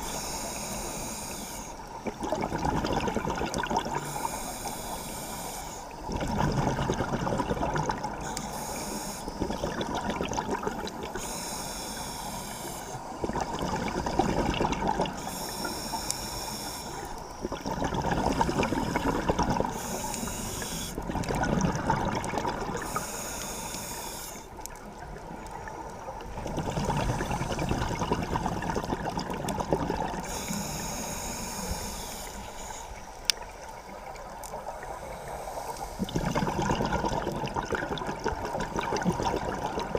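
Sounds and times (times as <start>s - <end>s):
regulator breathing hiss: 0.0s - 2.0s, 3.9s - 6.1s, 8.2s - 9.4s, 10.8s - 13.2s, 15.1s - 17.5s, 18.2s - 21.0s, 22.8s - 24.7s, 30.2s - 34.0s, 34.6s - 36.2s
exhaled bubbles gushing: 2.0s - 4.2s, 6.0s - 8.4s, 9.4s - 11.2s, 13.1s - 15.3s, 17.1s - 20.2s, 20.9s - 23.2s, 24.6s - 30.5s, 36.0s - 39.9s.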